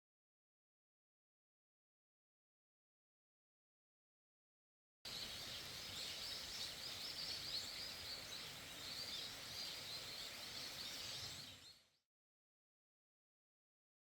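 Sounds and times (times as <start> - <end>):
steady hiss: 5.1 - 11.7.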